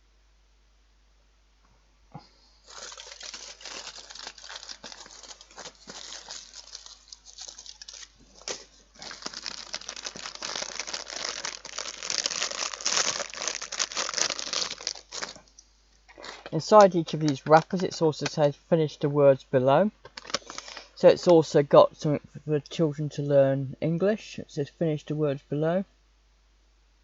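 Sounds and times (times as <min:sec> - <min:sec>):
wrappers crinkling: 0:02.6 - 0:15.5, 0:16.1 - 0:18.4, 0:20.1 - 0:21.5.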